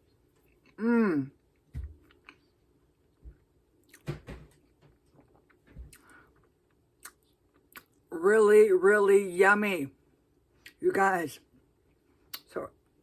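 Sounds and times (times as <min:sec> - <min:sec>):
person chewing food: 0:00.0 - 0:00.8, 0:01.4 - 0:04.0, 0:04.9 - 0:08.1.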